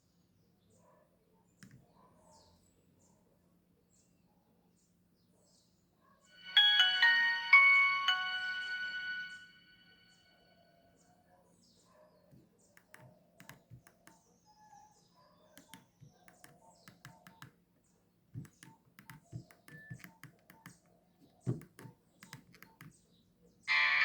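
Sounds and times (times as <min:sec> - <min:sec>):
phone keypad clicks: 0:12.8 - 0:14.2, 0:18.4 - 0:20.9, 0:21.5 - 0:23.0.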